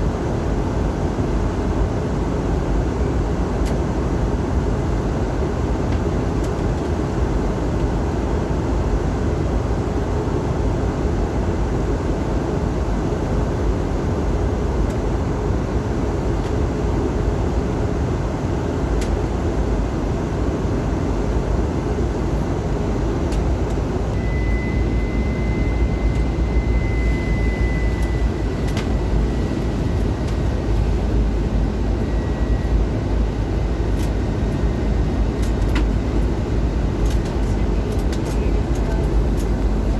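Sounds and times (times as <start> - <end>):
airplane cabin roar: 0.0 - 39.9
faint high steady tone: 24.1 - 30.3.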